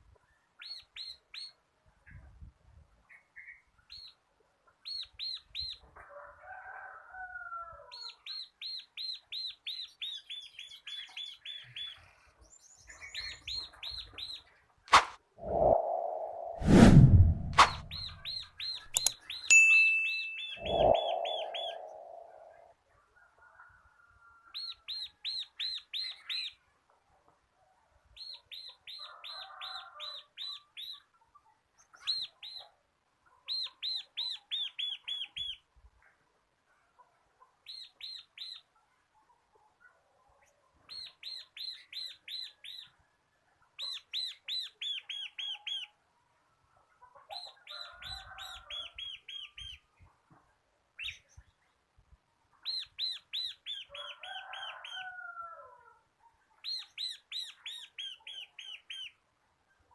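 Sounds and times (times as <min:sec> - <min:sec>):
bird singing sharp ringing notes: 0:19.0 - 0:21.9
soft bird chattering: 0:20.1 - 0:22.5.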